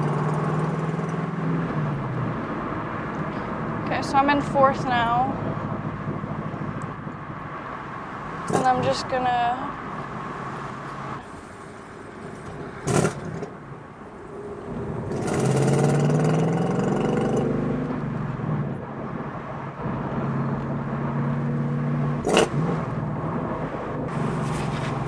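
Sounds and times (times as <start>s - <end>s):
car engine revving on downshift: 12.8s - 13.5s, 15.0s - 18.8s, 20.1s - 25.0s.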